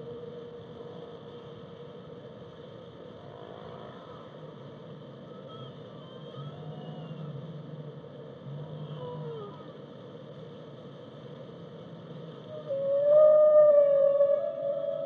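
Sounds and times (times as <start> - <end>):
whale low moans: 8.5 - 9.8
whale high gliding calls: 12.5 - 15.0.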